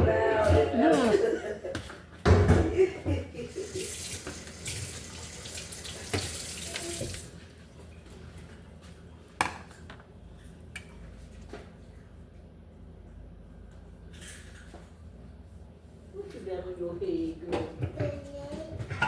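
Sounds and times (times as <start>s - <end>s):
water running from tap into sink: 3.5s - 7.9s.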